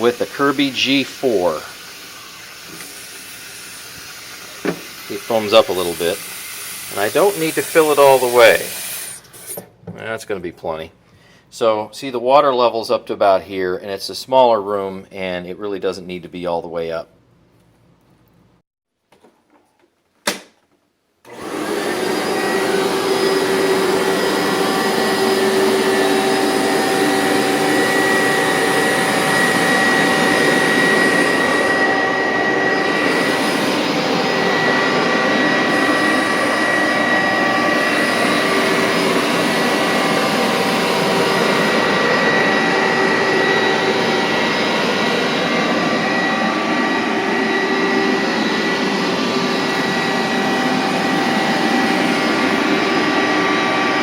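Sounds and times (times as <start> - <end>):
carpet cleaner motor whine: 0.0 - 9.1, 21.3 - 54.0.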